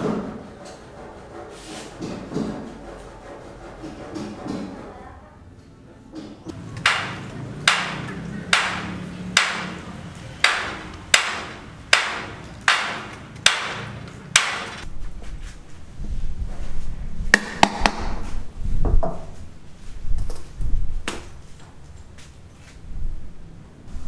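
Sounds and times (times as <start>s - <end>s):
ringing hammer blows: 6.5s - 14.8s
sharp knocks: 6.5s - 14.9s, 17.4s - 18.3s.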